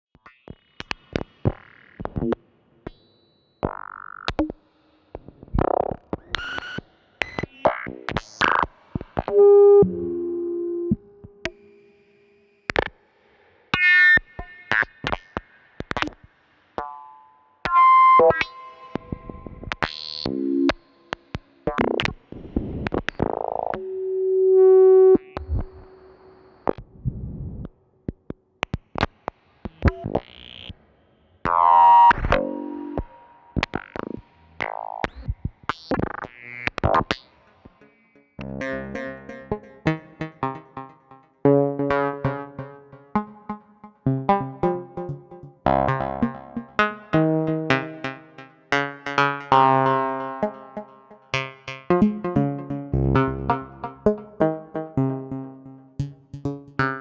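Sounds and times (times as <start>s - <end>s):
glitchy synthesizer notes and clicks: 31.5s - 57.0s.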